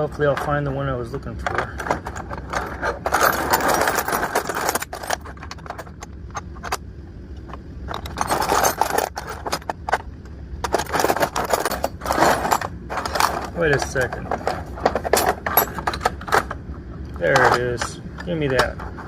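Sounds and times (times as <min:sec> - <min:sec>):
metal hex keys clinking: 0:01.6 - 0:06.8, 0:07.9 - 0:10.1, 0:10.7 - 0:16.5.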